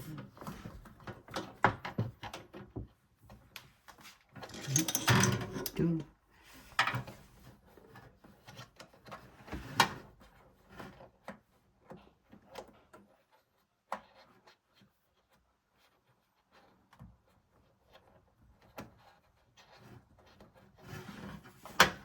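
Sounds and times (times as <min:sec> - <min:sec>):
tools clicking and tapping: 0:04.4 - 0:05.9.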